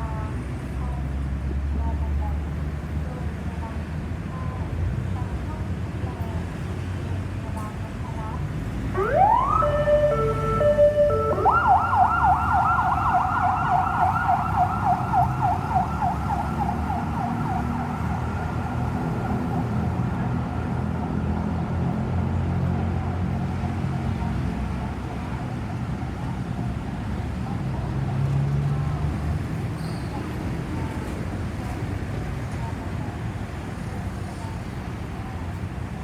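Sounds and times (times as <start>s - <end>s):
road traffic rumble: 0.0s - 36.0s
ambulance electronic siren: 8.9s - 20.9s.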